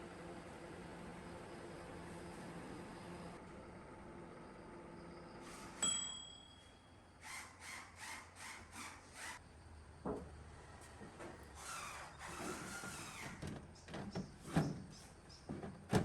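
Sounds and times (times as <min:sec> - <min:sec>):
microwave oven humming: 0:00.0 - 0:06.0
microwave ding: 0:05.8 - 0:07.0.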